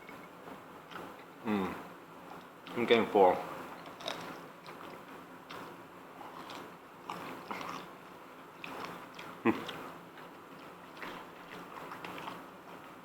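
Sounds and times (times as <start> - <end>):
people chewing with wet mouth smacks: 3.8 - 12.9.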